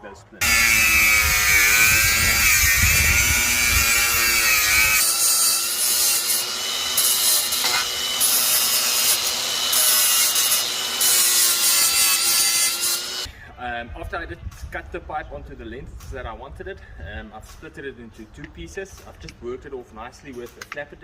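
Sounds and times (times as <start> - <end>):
power tool grinding plastic pipe: 0.4 - 13.3.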